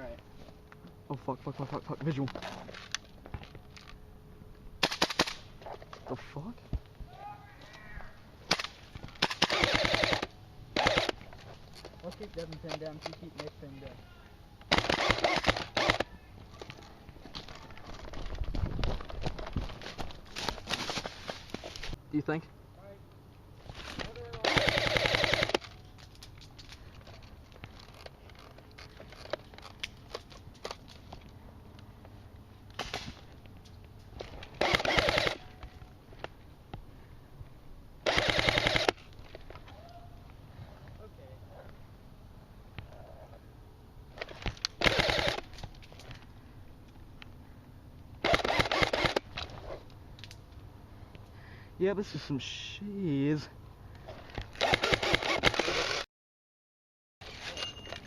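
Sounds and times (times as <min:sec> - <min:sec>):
airsoft rifle full-auto burst: 0:09.2 - 0:11.2, 0:14.7 - 0:16.1, 0:24.4 - 0:25.6, 0:34.6 - 0:35.5, 0:38.0 - 0:39.0, 0:44.8 - 0:45.5, 0:48.2 - 0:49.3, 0:54.6 - 0:56.0.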